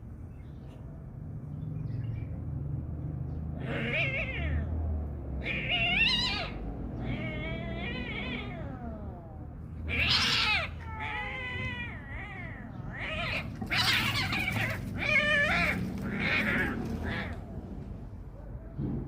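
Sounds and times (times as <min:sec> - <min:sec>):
kitten yowling: 0:03.6 - 0:04.8, 0:05.4 - 0:17.4
low rumble: 0:11.5 - 0:19.0.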